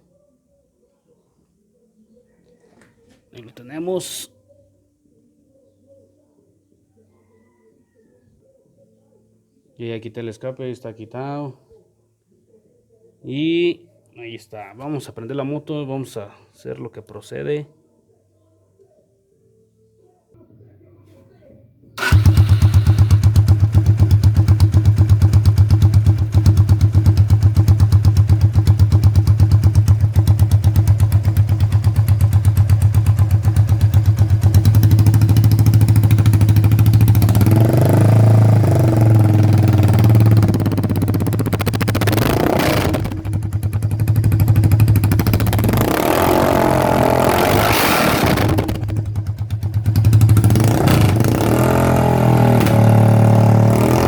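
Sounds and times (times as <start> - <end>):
loud motorcycle engine idling and revving: 22.0 - 54.0.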